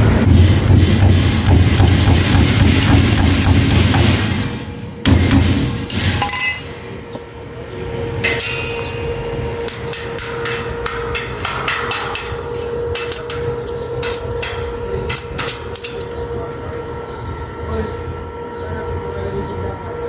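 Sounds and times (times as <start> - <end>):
hammer striking metal: 0.0 - 7.0, 8.2 - 16.1
steady hum: 0.0 - 20.0.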